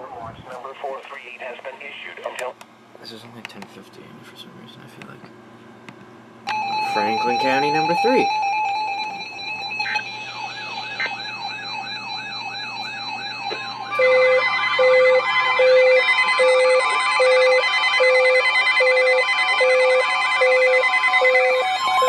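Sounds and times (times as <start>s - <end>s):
siren tone sweeping up and down: 6.5s - 22.0s
steady alarm tones: 6.5s - 22.0s.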